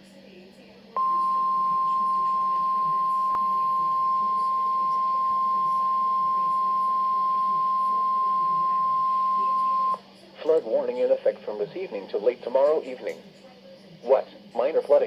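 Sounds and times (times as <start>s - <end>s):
faint low hum: 0.0s - 15.0s
long steady alert beep: 1.0s - 10.0s.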